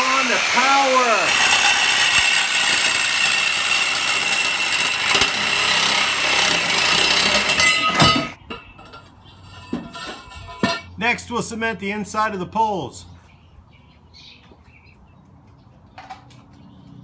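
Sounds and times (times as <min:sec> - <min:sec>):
power saw cutting: 0:00.0 - 0:08.4.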